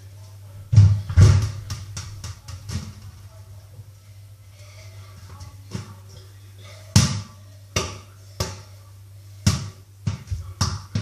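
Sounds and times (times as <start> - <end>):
ball bouncing on a hard floor: 0.7 - 3.1, 7.0 - 8.7, 9.4 - 11.0.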